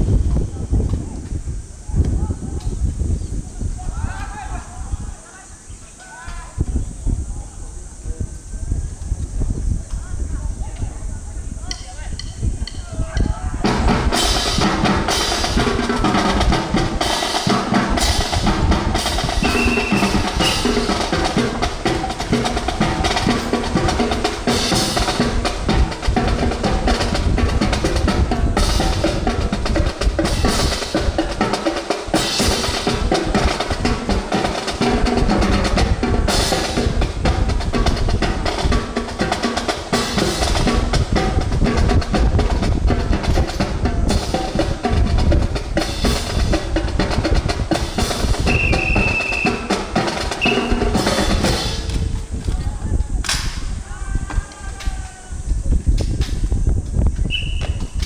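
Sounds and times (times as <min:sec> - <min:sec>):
snare drum rolls: 0:11.7 - 0:52.4
marching drum music: 0:11.7 - 0:55.0.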